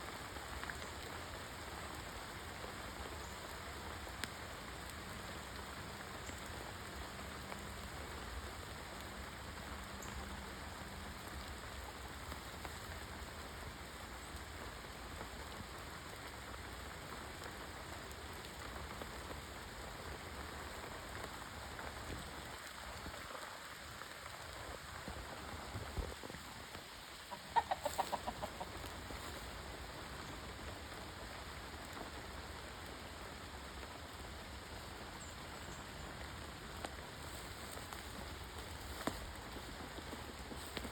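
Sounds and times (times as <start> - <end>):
chicken clucking: 27.3 - 28.8.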